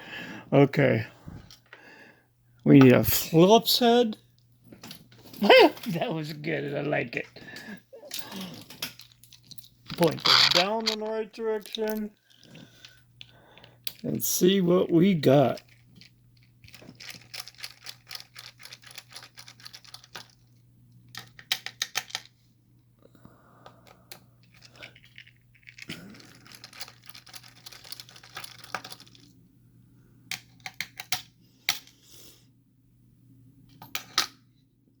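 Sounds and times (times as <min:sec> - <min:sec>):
small metal lock parts clicking: 0:08.1 - 0:12.0, 0:15.5 - 0:20.4, 0:21.1 - 0:22.3, 0:24.1 - 0:29.3, 0:30.3 - 0:31.8.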